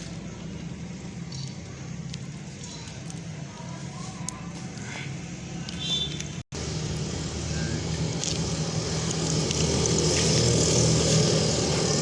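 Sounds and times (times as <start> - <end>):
street traffic: 0.0 - 12.0
vehicle engine running: 6.5 - 12.0.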